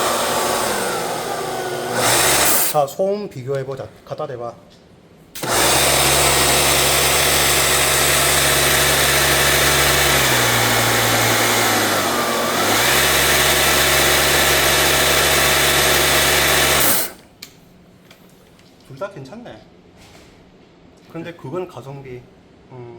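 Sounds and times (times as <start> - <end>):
electric pressure washer running: 0.0 - 2.8, 5.4 - 17.2.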